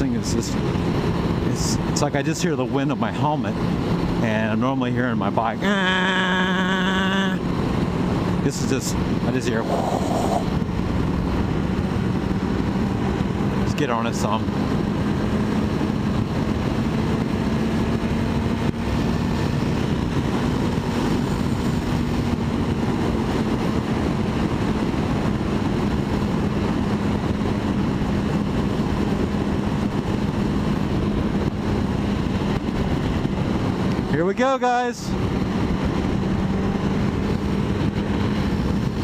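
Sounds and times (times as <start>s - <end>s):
motorcycle engine cruising: 2.6s - 34.2s, 35.1s - 39.0s
wind rush over helmet: 9.2s - 13.6s.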